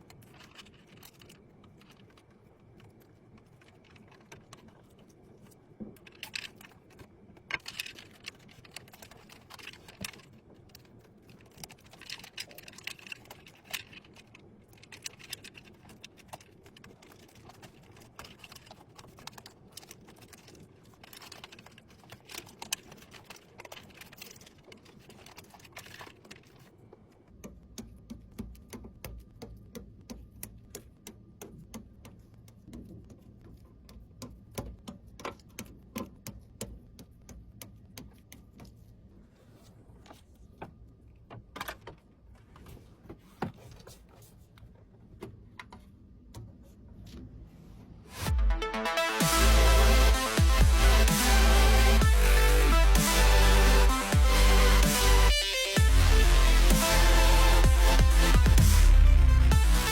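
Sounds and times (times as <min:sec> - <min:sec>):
small hard parts clattering: 0:00.0 - 0:26.8
low hum: 0:48.0 - 0:59.9.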